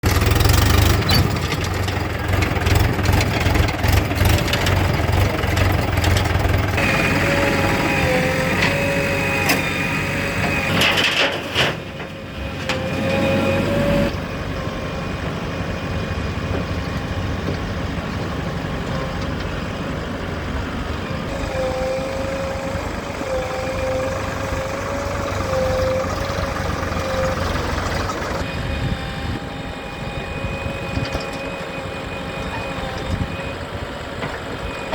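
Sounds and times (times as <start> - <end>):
diesel tractor engines running: 0.0 - 34.9
wavering whine: 21.2 - 34.0.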